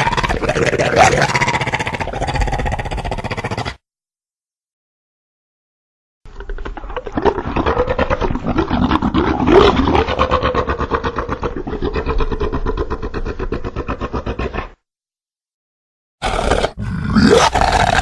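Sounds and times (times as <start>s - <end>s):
creature growling: 0.0s - 3.8s, 7.0s - 14.8s, 16.2s - 18.0s.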